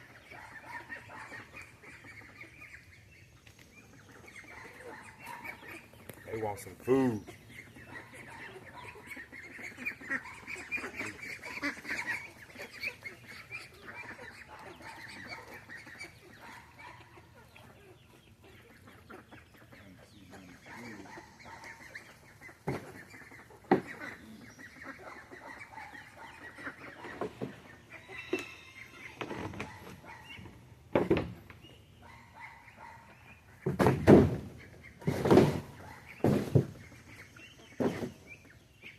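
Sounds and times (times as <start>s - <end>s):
poultry clucking: 0.0s - 38.9s.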